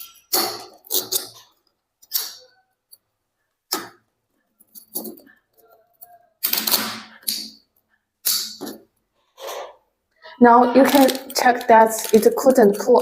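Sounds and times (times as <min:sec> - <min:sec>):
plastic clicks and clatters: 0:10.8 - 0:13.0.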